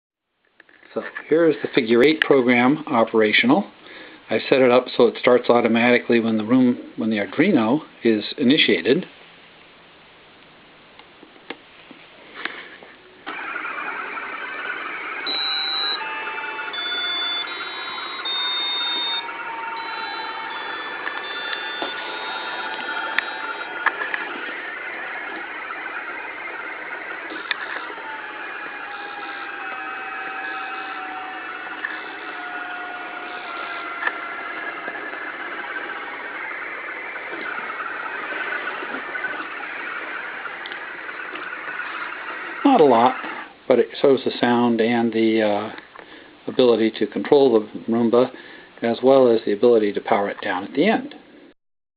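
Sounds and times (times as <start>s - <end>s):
motor start click: 13.3s - 43.5s
robot vacuum motor whine: 13.3s - 43.5s
electronic beep tune: 15.3s - 16.0s, 16.7s - 23.7s.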